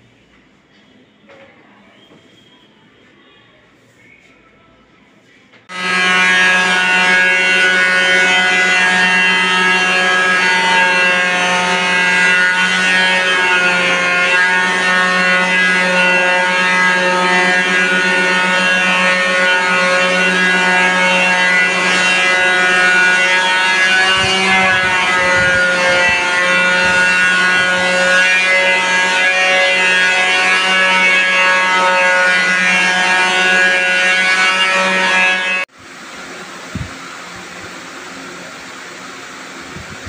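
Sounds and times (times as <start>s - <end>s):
loud machine hum: 5.7s - 40.0s
fan-like hiss: 35.8s - 40.0s.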